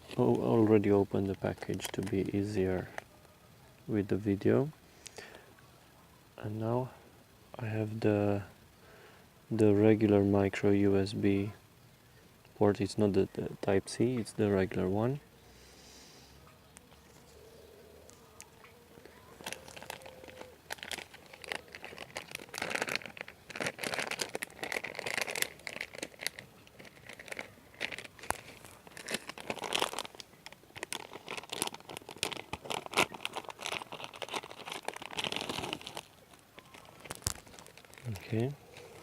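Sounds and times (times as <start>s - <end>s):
packaging crinkling and rustling: 1.2s - 2.4s, 18.1s - 39.0s.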